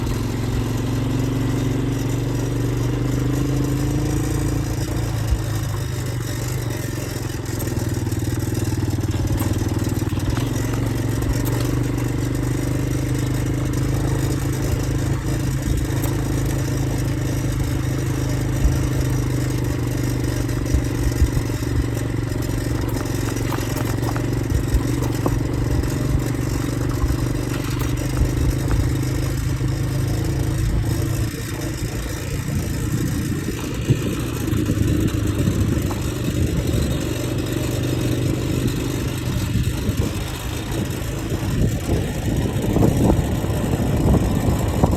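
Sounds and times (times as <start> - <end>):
motorcycle engine running: 0.0 - 44.9
clicks and rattles: 4.4 - 36.6.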